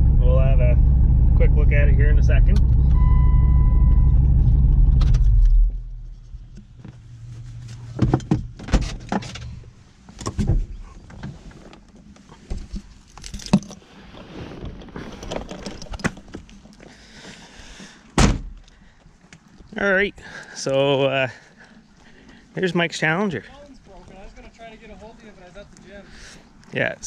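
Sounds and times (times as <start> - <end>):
car engine running: 0.0 - 9.8.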